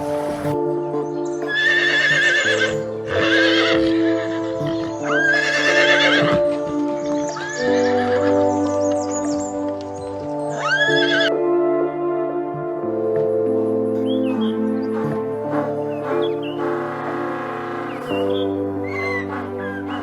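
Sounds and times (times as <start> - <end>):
background music chords: 0.0 - 20.0
horse whinnying: 1.5 - 6.6, 10.5 - 11.3, 14.0 - 20.0.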